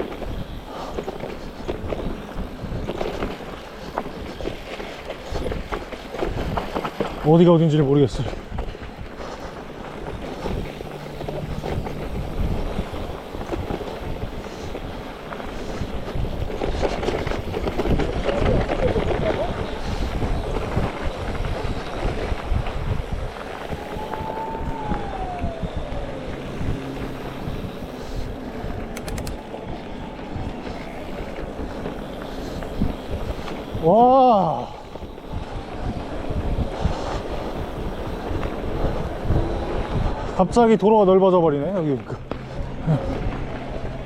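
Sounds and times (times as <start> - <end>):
bike rattling on dirt trail: 0.0 - 44.0
wind buffeting microphone: 0.0 - 44.0
electric motor whine: 22.9 - 33.7
quick ticks: 28.8 - 29.5.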